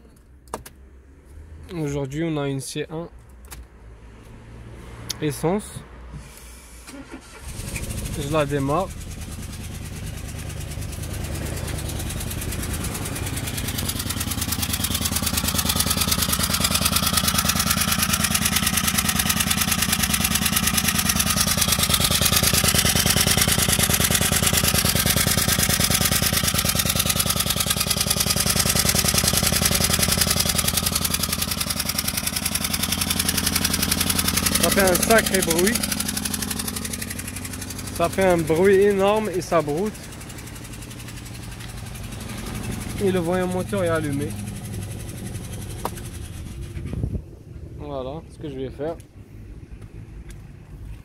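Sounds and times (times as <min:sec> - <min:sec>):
car engine idling roughly: 0:06.9 - 0:47.1.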